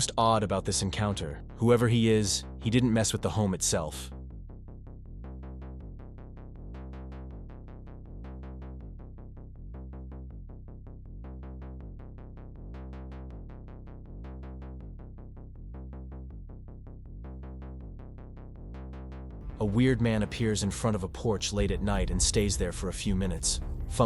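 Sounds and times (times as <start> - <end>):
electronic music with steady beat: 19.4 - 24.0.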